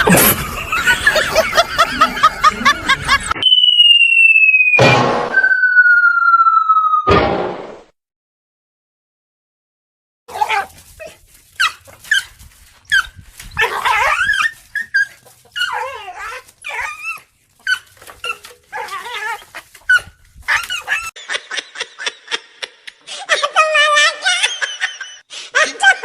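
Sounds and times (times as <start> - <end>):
dog yipping and whining: 10.3 - 21.2.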